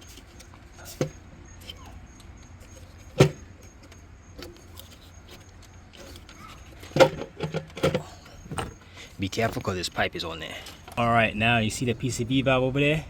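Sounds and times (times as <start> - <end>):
knocks on engine parts: 3.2 - 3.5, 6.8 - 8.8.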